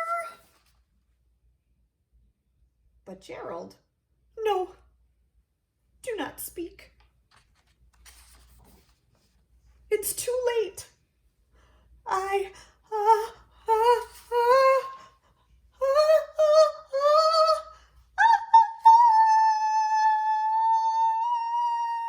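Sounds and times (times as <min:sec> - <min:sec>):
person singing mournful tune: 0:12.1 - 0:15.2, 0:15.8 - 0:22.0.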